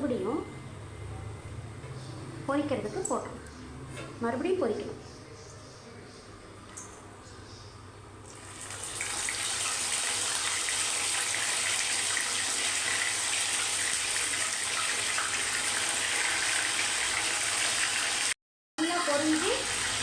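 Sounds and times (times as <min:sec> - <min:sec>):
chicken deep-frying in oil: 0:08.3 - 0:20.0.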